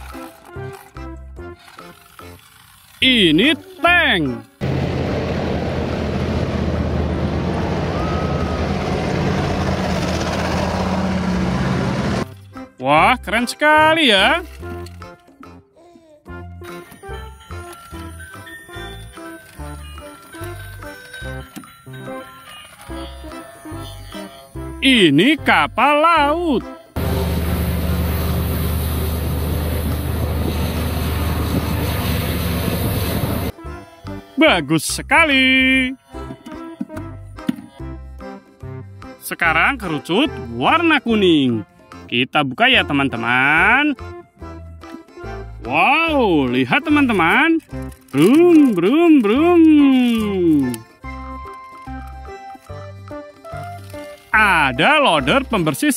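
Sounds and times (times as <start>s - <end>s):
heavy vehicle engine rumbling: 4.6s - 12.3s, 27.0s - 33.5s
faint high tone: 7.9s - 8.9s.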